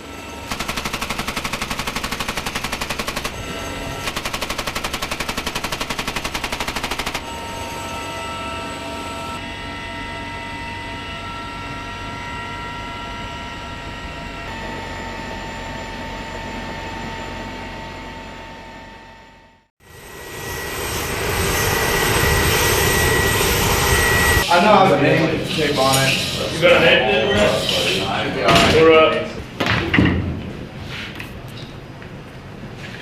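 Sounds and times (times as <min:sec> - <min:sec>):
helicopter turbine engines whining: 0:00.0 - 0:29.6
machine gun bursts: 0:00.5 - 0:03.4, 0:04.0 - 0:07.3.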